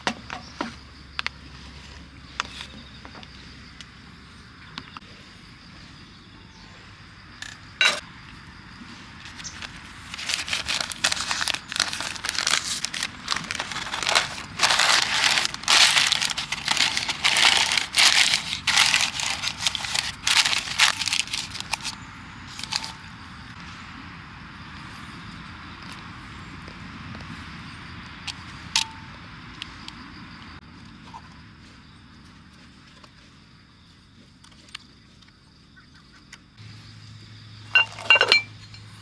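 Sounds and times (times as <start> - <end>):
wrapping material crinkling: 9.3 - 23.0.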